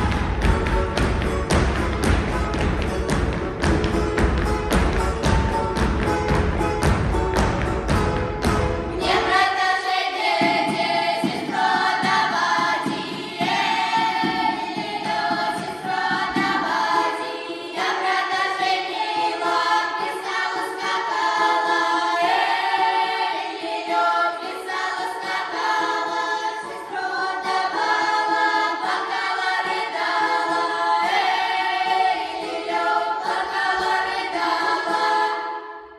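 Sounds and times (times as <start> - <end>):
knocks and low thumps: 0.0 - 9.3
group singing unaccompanied: 0.0 - 35.9.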